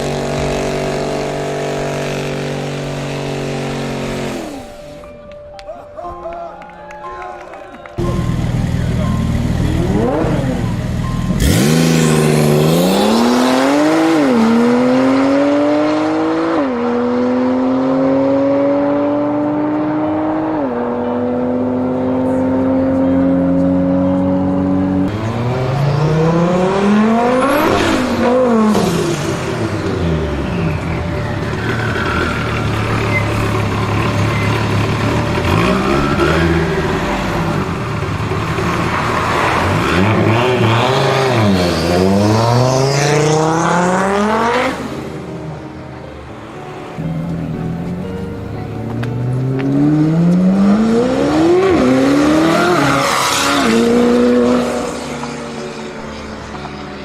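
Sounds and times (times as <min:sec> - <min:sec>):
car engine accelerating: 0:00.0 - 0:04.8, 0:08.0 - 0:57.0
cars passing at speed: 0:11.4 - 0:57.0.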